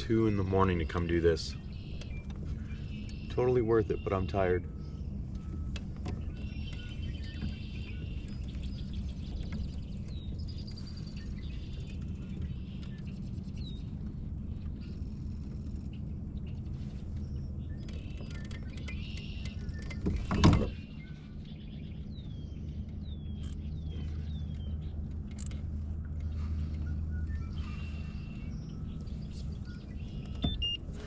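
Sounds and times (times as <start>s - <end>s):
birds chirping and calling: 0.0s - 31.0s
low hum: 0.0s - 31.0s.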